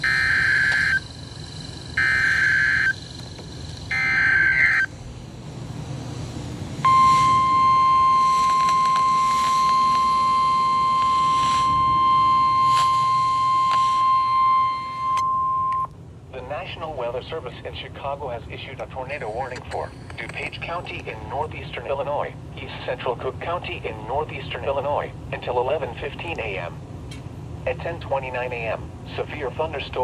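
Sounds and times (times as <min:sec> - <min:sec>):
warbling data screech: 0:00.0 - 0:04.9, 0:06.8 - 0:15.2
steady warning alarm tone: 0:00.0 - 0:15.9.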